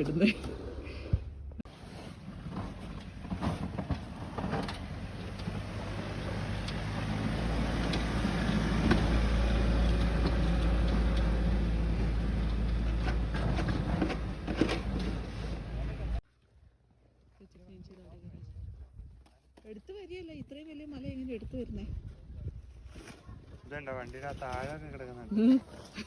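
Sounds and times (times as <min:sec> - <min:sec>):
vehicle engine rumbling past: 0:02.6 - 0:16.2.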